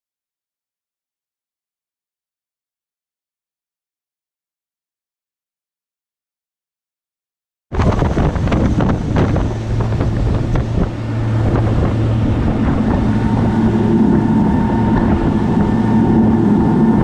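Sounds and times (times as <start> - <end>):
wind buffeting microphone: 7.7 - 17.0
motorboat engines running: 7.8 - 17.0.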